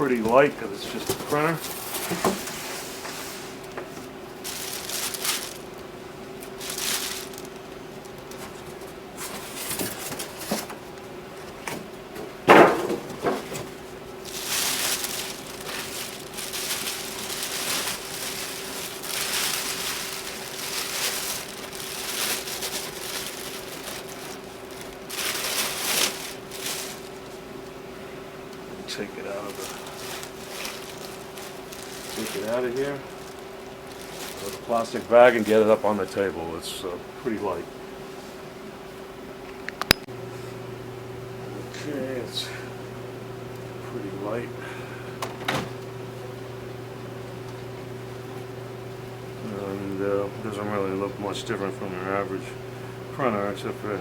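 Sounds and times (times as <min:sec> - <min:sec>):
plastic bag crinkling: 0:00.0 - 0:02.6, 0:03.5 - 0:10.7, 0:12.8 - 0:27.8, 0:28.9 - 0:36.2
steady low hum: 0:00.0 - 0:54.0.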